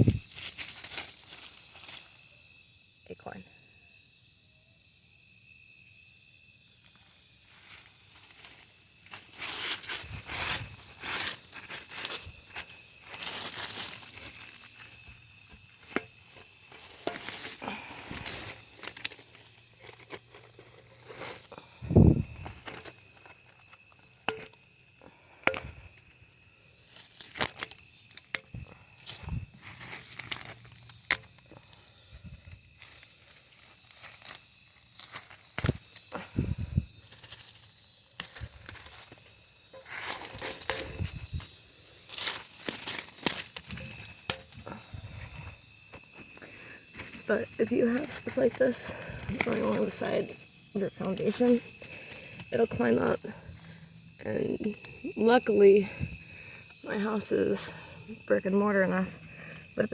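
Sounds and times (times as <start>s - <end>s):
vines rustling and ripping: 0.0s - 2.3s, 6.9s - 24.3s, 26.8s - 53.9s
insect chirping: 0.0s - 59.9s.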